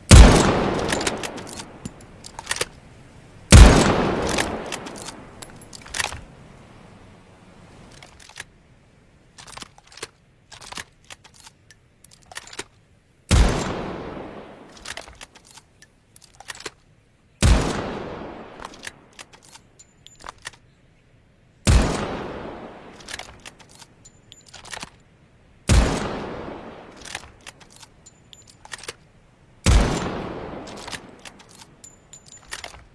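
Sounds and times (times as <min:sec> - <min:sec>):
rifle shots echoing: 0:00.1 - 0:01.9, 0:03.5 - 0:05.6, 0:13.3 - 0:14.8, 0:17.4 - 0:19.0, 0:21.7 - 0:23.1, 0:25.7 - 0:27.2, 0:29.6 - 0:31.6
rifle breechblock clicks and rattles: 0:00.1 - 0:02.8, 0:03.6 - 0:06.3, 0:07.9 - 0:08.5, 0:09.4 - 0:12.8, 0:14.7 - 0:16.9, 0:18.6 - 0:20.7, 0:23.0 - 0:25.1, 0:26.9 - 0:29.2, 0:30.7 - 0:32.9.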